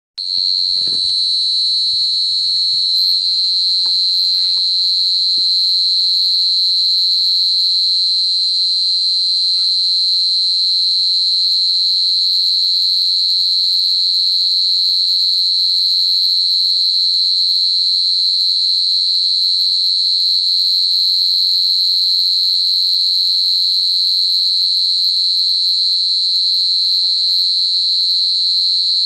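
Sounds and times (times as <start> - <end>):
night insects shrilling: 26.6 - 28.2.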